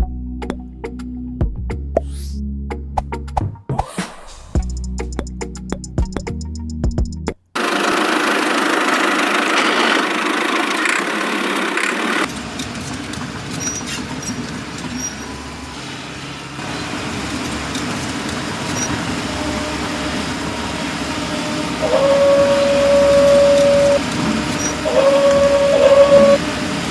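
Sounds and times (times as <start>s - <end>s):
engine-like running sound: 7.6s - 26.9s.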